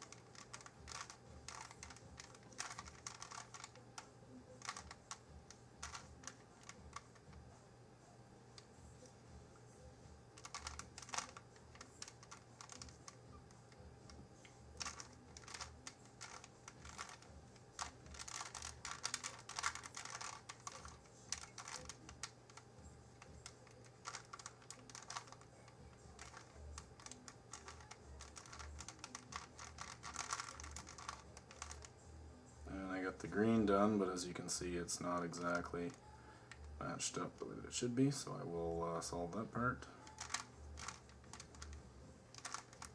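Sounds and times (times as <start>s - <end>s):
puzzle cube plastic clicks: 0.0s - 3.8s, 4.6s - 5.2s, 5.8s - 7.2s, 10.4s - 13.2s, 14.8s - 22.6s, 23.2s - 31.9s, 40.0s - 42.9s.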